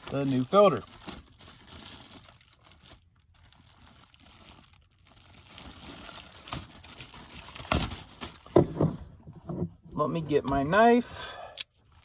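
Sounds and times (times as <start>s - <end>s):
plastic wrap crinkling: 0.0s - 8.6s.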